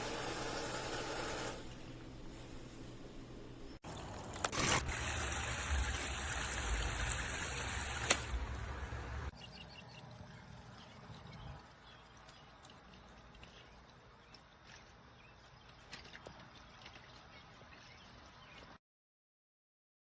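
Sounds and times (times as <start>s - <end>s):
water trickling into basin: 9.5s - 18.8s.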